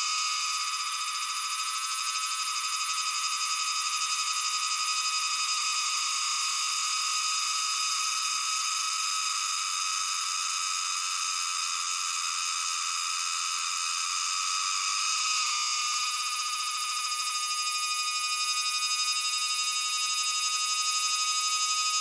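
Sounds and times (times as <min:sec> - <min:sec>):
cicada buzzing drone: 0:00.0 - 0:22.0.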